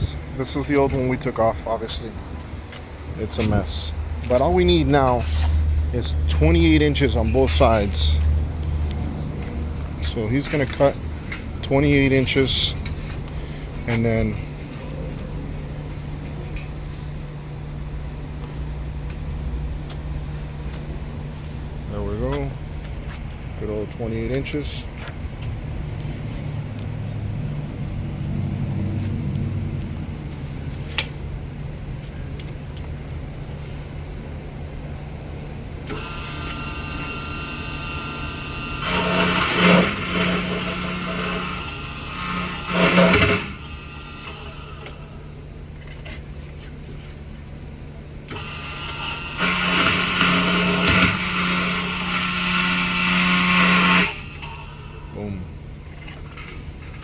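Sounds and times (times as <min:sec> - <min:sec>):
machine hum: 0:00.0 - 0:57.0
power saw cutting metal: 0:09.4 - 0:13.1, 0:35.9 - 0:45.4, 0:48.3 - 0:55.2.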